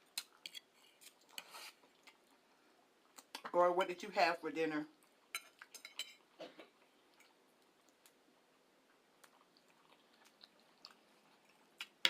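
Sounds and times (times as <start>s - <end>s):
chewing and mouth sounds: 4.9s - 12.0s.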